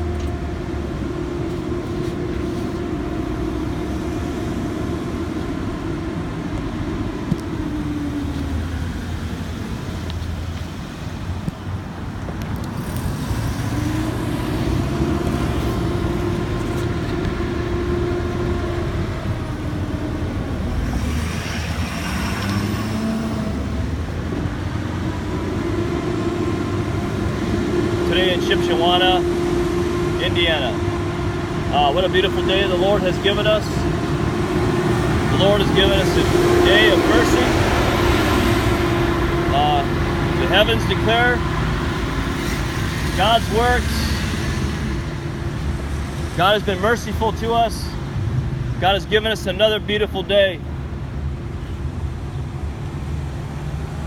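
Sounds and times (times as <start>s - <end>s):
droning engine hum: 0.0s - 54.0s
rumble of vehicles: 0.0s - 54.0s.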